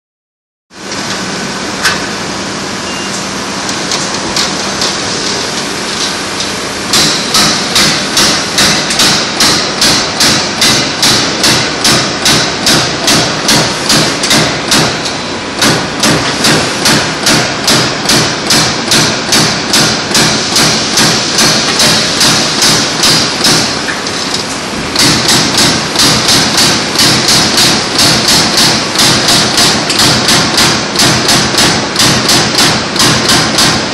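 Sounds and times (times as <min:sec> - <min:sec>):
machine hum: 0:00.8 - 0:33.9
punch press strokes: 0:06.9 - 0:24.0, 0:24.9 - 0:33.9.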